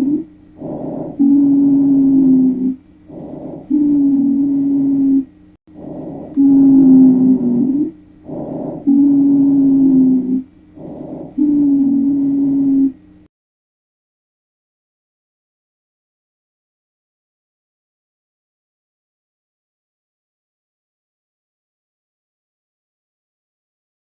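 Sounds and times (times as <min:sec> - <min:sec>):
low-pitched wheeze: 0:00.0 - 0:13.0.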